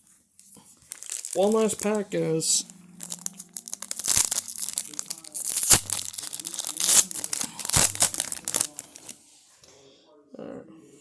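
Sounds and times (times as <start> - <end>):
foil wrapper tearing and crinkling: 0.8 - 9.2.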